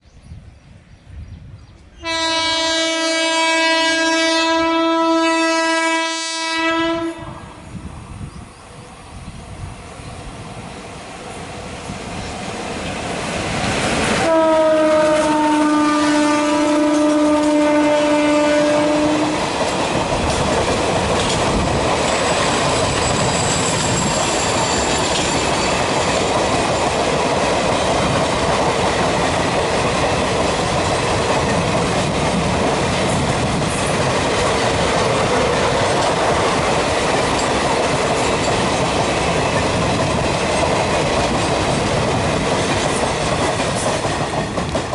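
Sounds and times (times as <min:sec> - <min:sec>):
train rumbling over track: 0:00.1 - 0:44.9
locomotive horn blast: 0:02.0 - 0:07.6, 0:14.2 - 0:19.5.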